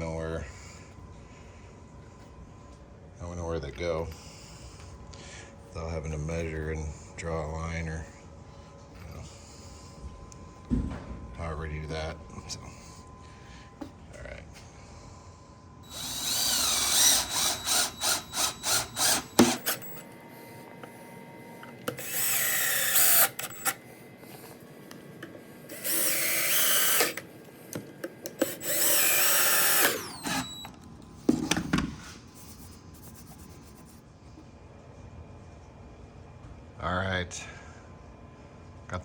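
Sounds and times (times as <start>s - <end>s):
thump: 10.7s - 11.2s
power drill driving screws: 15.9s - 20.0s, 21.9s - 23.8s, 25.7s - 27.3s, 28.3s - 30.7s.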